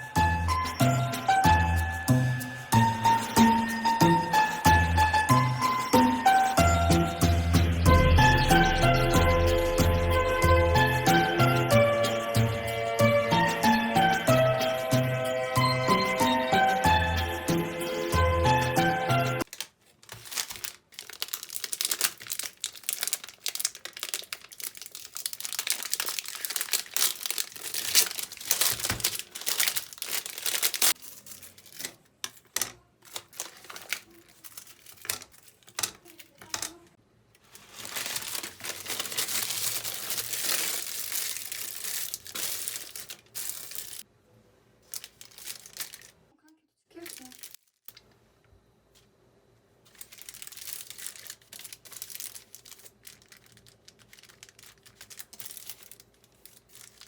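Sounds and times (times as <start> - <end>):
background music: 0.0 - 19.4
packaging crinkling and tearing: 19.4 - 36.8, 37.4 - 44.0, 44.8 - 46.2, 46.9 - 48.0, 49.9 - 57.0.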